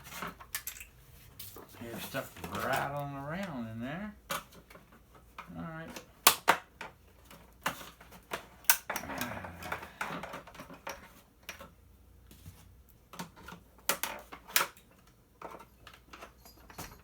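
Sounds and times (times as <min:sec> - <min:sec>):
plastic parts clicking and knocking: 0:00.0 - 0:01.0, 0:04.2 - 0:11.8, 0:13.0 - 0:17.0.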